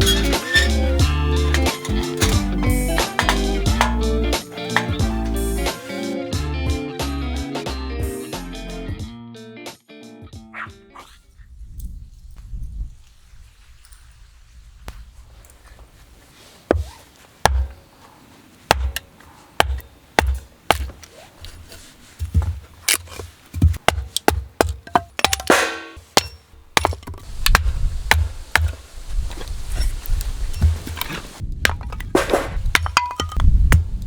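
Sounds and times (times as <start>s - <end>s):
firewood splitting knocks and cracks: 0.0s - 5.4s, 18.7s - 29.9s, 30.6s - 34.0s.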